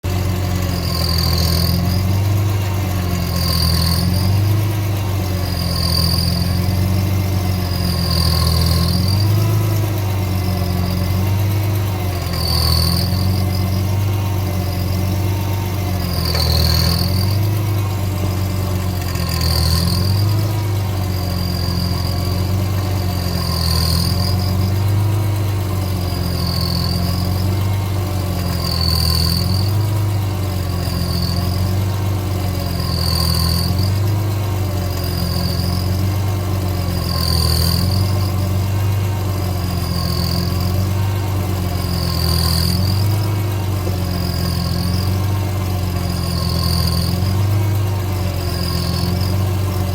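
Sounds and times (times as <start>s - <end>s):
car engine idling: 0.0s - 49.9s
high-pitched squeak: 0.4s - 38.8s, 39.5s - 40.9s, 41.6s - 43.3s, 45.9s - 47.7s, 48.3s - 49.9s
wavering tone: 0.6s - 34.3s.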